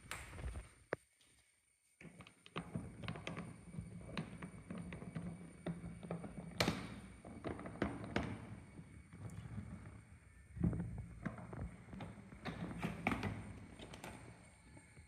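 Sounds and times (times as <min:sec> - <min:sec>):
trolley suitcase knocking: 0:02.6 - 0:10.0, 0:10.6 - 0:14.4
low steady hum: 0:02.6 - 0:15.0.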